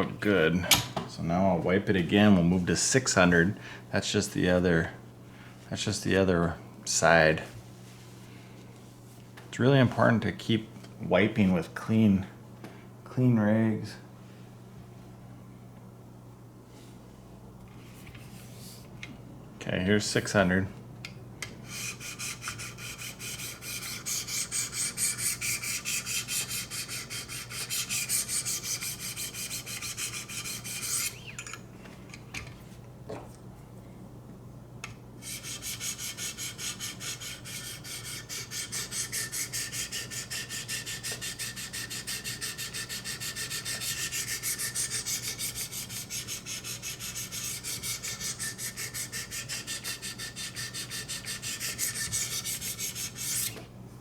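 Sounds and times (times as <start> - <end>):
sharpening stone scraping blade: 21.8 - 31.5, 35.2 - 53.6.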